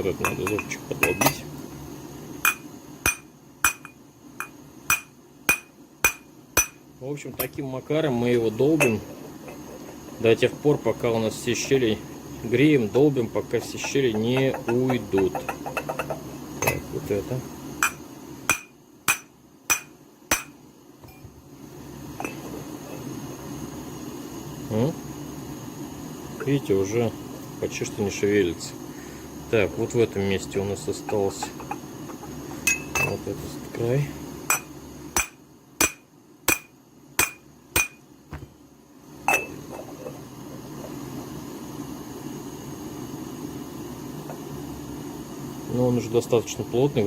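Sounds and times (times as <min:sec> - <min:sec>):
faint steady hiss: 0:00.0 - 0:47.0
hammer striking metal: 0:02.5 - 0:04.0, 0:04.9 - 0:06.8, 0:17.8 - 0:20.6, 0:34.5 - 0:38.0.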